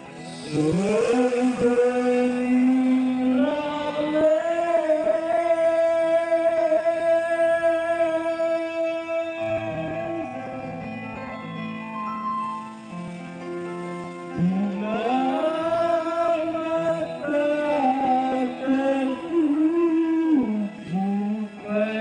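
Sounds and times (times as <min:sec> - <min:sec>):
plucked-string accompaniment: 0:09.0 - 0:22.0.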